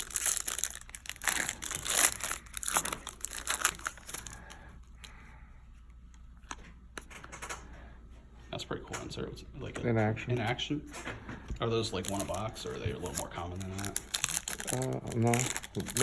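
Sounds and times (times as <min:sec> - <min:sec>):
foil wrapper tearing and crinkling: 0:00.0 - 0:04.6, 0:11.9 - 0:16.0.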